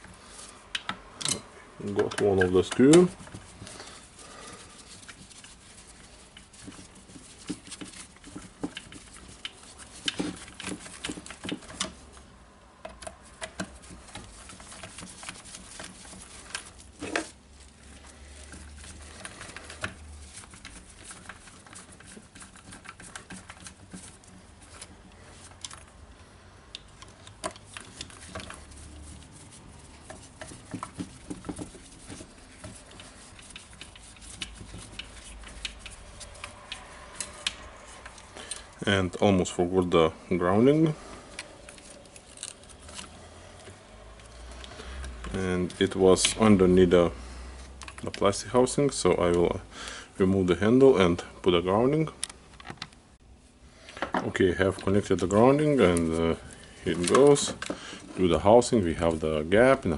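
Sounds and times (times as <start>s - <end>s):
hands working on plastic housing: 0.0s - 49.7s, 53.9s - 59.9s.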